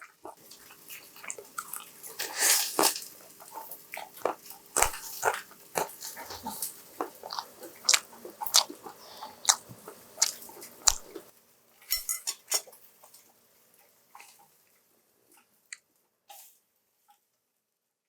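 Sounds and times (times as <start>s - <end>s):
crunchy chewing: 0.0s - 11.3s.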